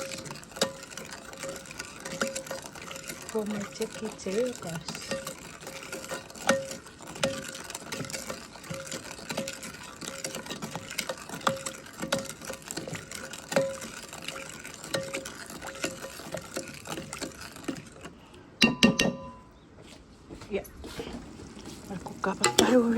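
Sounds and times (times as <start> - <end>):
spoon knocking against pot: 18.6 - 19.5, 22.4 - 22.8.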